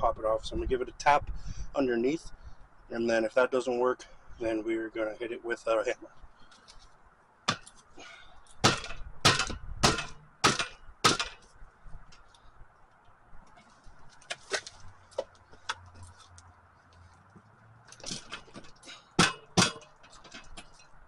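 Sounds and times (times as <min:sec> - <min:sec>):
sharp knocks on wheel axle: 0:08.6 - 0:11.4, 0:18.1 - 0:20.0.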